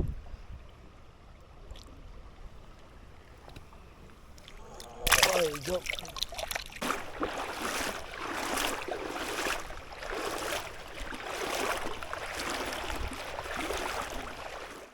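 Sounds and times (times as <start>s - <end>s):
river water rushing and splashing: 4.3s - 14.9s.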